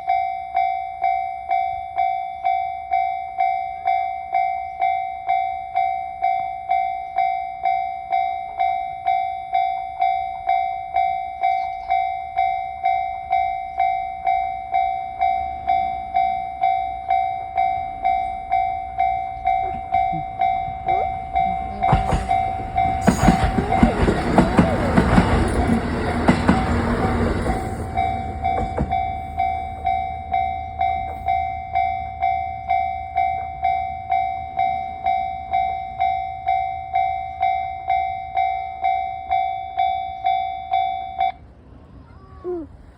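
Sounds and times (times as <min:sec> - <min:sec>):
level-crossing warning bell ringing: 0:00.0 - 0:41.5
train wheels clattering over rail joints: 0:19.5 - 0:30.2.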